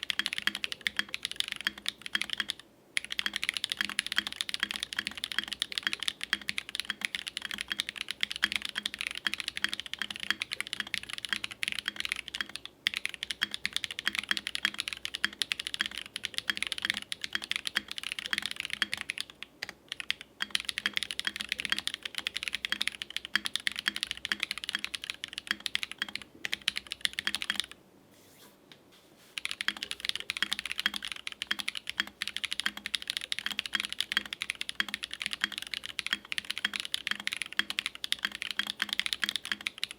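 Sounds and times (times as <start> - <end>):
typing on mechanical keyboard: 0.0 - 27.8, 29.4 - 39.9.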